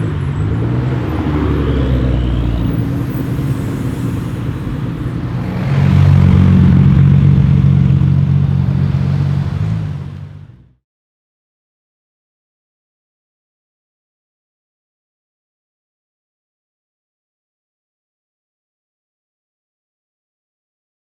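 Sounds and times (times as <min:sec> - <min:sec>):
car engine exhaust running: 0:00.0 - 0:10.7.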